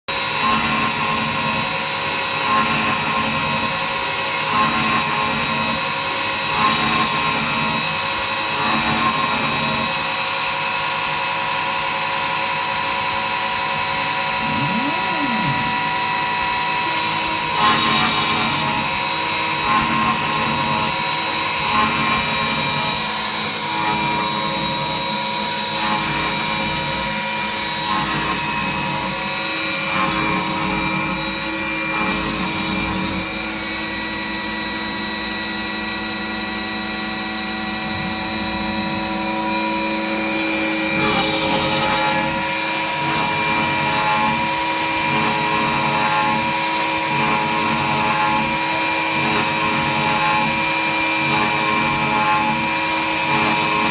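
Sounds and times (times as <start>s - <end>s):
machine motor whine: 12.4s - 53.9s.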